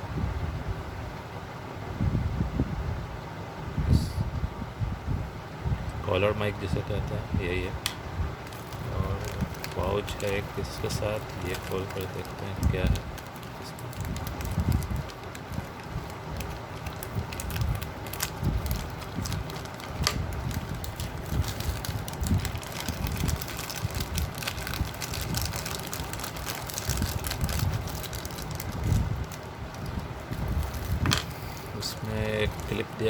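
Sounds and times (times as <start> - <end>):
rummaging through a pouch: 8.4 - 33.0.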